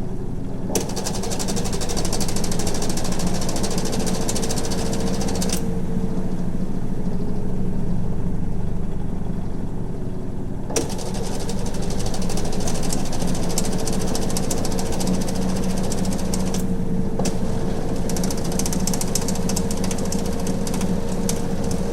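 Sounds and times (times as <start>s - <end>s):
washing machine motor hum: 0.0s - 21.9s
washing machine rattle: 0.6s - 5.8s, 10.6s - 21.9s.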